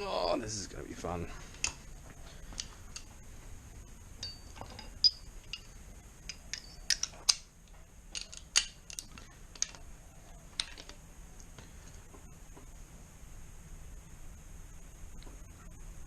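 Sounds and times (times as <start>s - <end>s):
socket wrench clicking and clinking: 4.2s - 5.7s, 6.3s - 7.4s, 8.1s - 9.8s.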